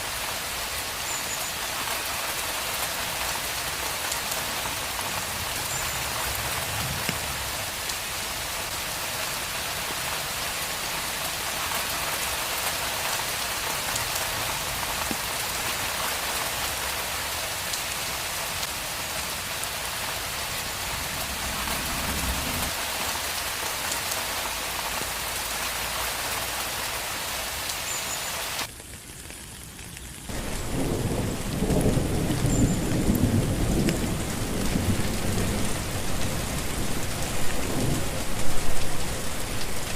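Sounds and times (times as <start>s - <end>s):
heavy rain on a street: 0.0s - 39.9s
low thunder rumbling: 30.3s - 39.9s.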